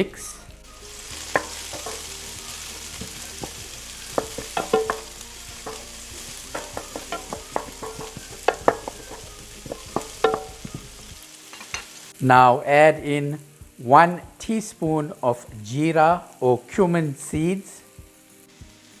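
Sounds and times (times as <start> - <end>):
onion sizzling in oil: 0.0 - 19.0
utensil scraping a pan: 1.2 - 2.2, 3.0 - 11.9.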